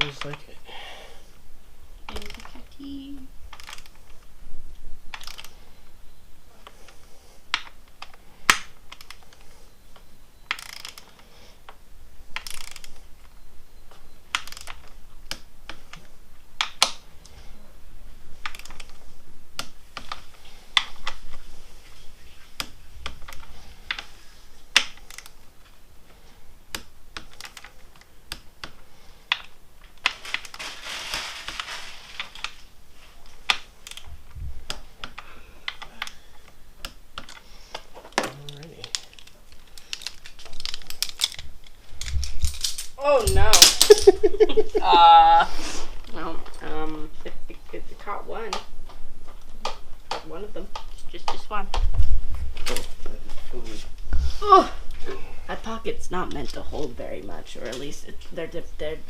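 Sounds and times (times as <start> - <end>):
metal parts rattling: 3.5 - 4.2, 10.5 - 11.2, 12.3 - 13.0, 30.0 - 32.6, 38.4 - 44.3.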